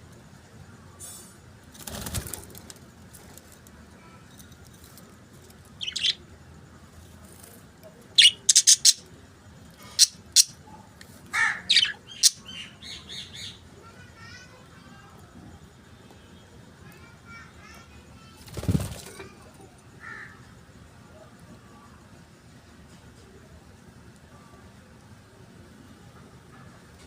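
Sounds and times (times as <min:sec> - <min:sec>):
budgerigars chirping: 0:05.8 - 0:06.2, 0:08.2 - 0:09.0, 0:10.0 - 0:10.6, 0:11.4 - 0:13.6.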